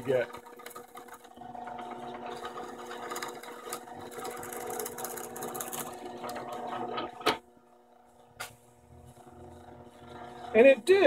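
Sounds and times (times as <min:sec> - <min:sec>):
drill press motor hum: 0:00.0 - 0:10.9.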